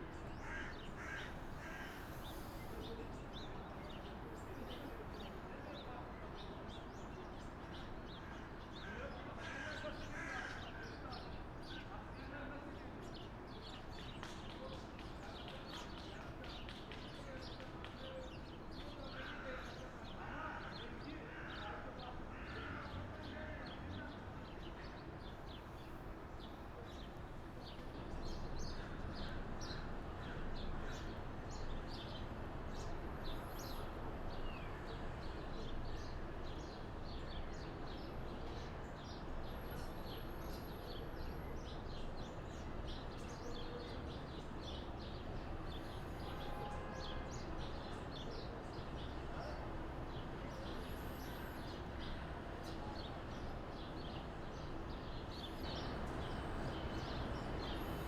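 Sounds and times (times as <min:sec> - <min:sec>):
birds chirping: 0:55.3 - 0:58.0.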